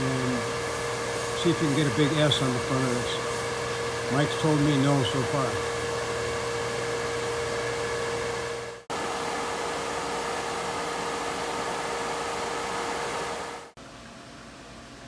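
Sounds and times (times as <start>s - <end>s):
water spraying inside cabinet: 0.0s - 5.7s
pump hum: 0.0s - 15.0s.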